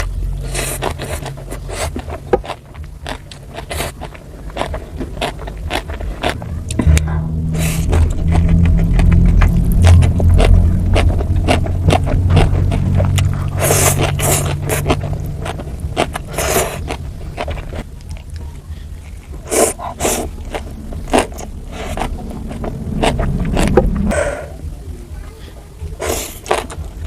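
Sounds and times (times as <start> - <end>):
person chewing noodles: 0.0 - 6.4, 9.9 - 22.1, 26.1 - 26.9
low hum: 0.0 - 26.0.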